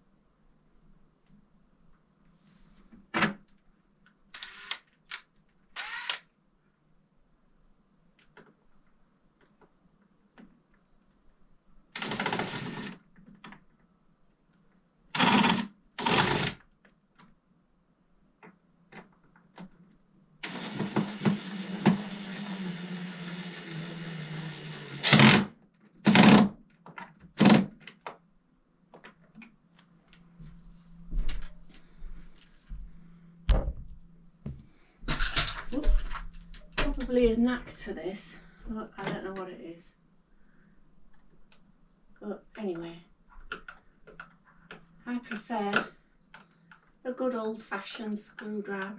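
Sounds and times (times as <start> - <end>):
power drill driving screws: 4.4 - 4.8, 5.8 - 6.3, 12.0 - 13.0, 15.2 - 16.6, 20.4 - 25.5.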